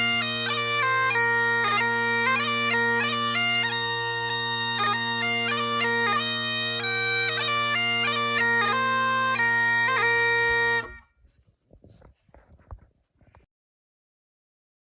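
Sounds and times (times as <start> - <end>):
bagpipes playing: 0.0 - 11.0.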